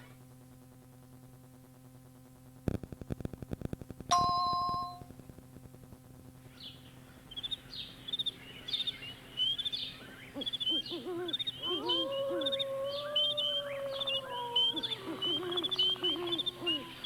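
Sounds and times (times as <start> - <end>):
low wavering hoots: 8.2 - 17.0.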